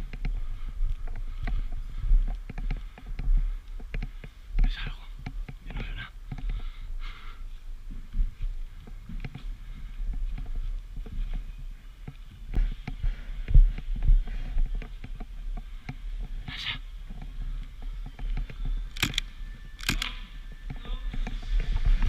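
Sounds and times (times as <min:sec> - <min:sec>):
sharp snaps: 0:18.9 - 0:20.2.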